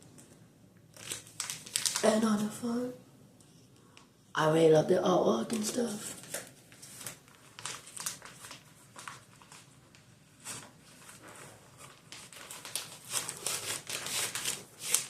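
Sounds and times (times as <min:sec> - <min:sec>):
paper and card rustling: 0:00.2 - 0:02.5, 0:05.5 - 0:15.0.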